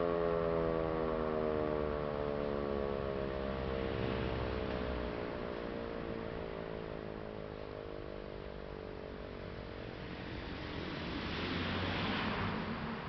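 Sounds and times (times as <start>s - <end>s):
motor siren winding down: 0.0s - 8.1s.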